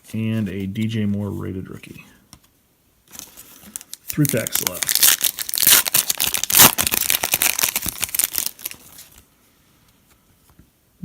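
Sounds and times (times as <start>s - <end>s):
card pack wrapper tearing: 3.1s - 9.2s.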